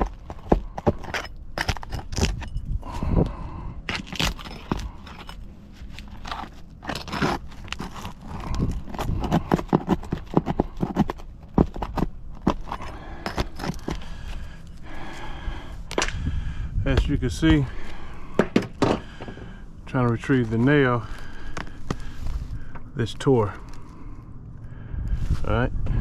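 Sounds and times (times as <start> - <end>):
tool scraping under roof shingles: 0.0 - 2.4, 3.9 - 14.6.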